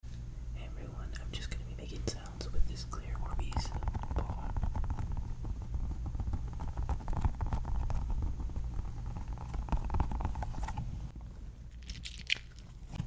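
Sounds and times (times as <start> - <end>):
tapping on water-bead ball: 2.9 - 10.8.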